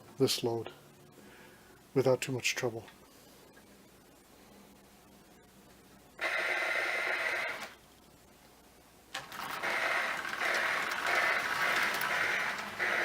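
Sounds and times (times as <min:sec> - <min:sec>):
toy train steam hissing: 0:06.2 - 0:07.6, 0:09.2 - 0:13.0.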